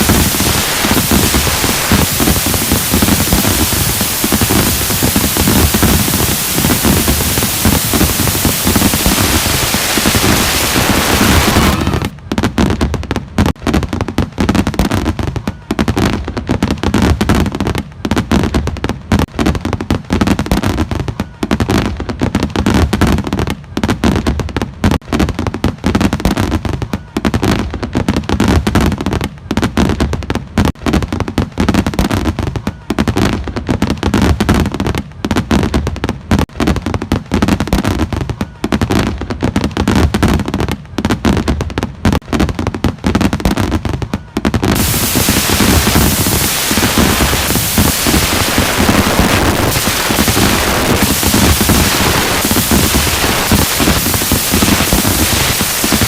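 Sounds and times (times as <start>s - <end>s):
steady static hiss: 0.0s - 11.6s, 44.8s - 56.0s
fireworks booming and crackling: 0.0s - 56.0s.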